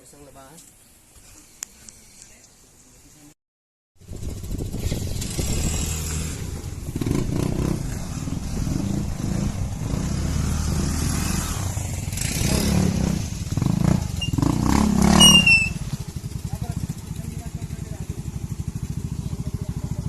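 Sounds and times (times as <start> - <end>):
wind on microphone: 4.0 - 13.4
motorcycle engine running: 4.0 - 20.0.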